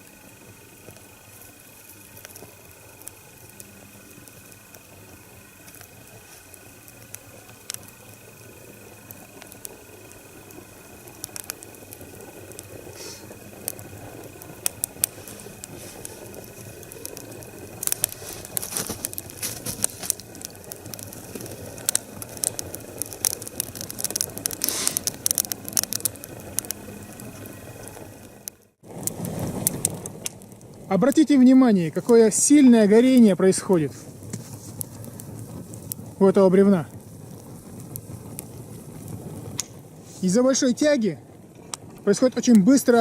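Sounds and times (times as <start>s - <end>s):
fire rushing hiss: 0.0s - 43.0s
wood fire crackling and popping: 0.0s - 43.0s.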